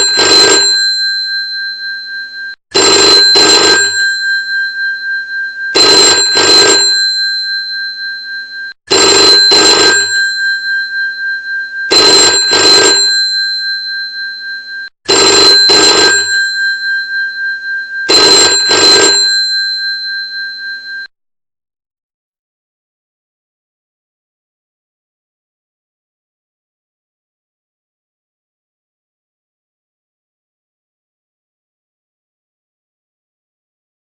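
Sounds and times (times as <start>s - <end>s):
telephone bell ringing: 0.0s - 21.1s.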